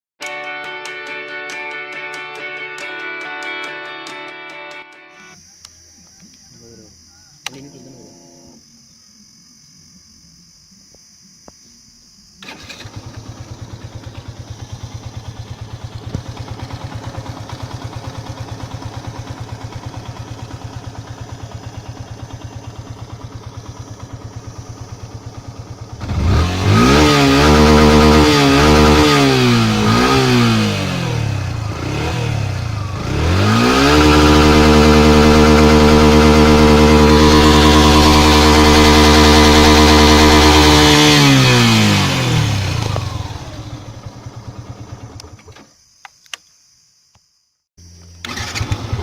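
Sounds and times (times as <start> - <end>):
motorcycle engine revving: 12.4 - 45.6, 48.2 - 49.0
motorcycle engine starting and idling: 12.4 - 45.7, 47.8 - 49.0.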